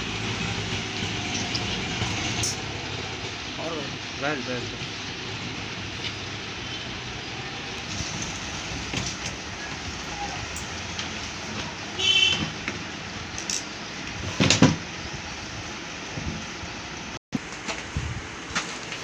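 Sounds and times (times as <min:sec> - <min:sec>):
steady background noise: 0:00.0 - 0:19.0.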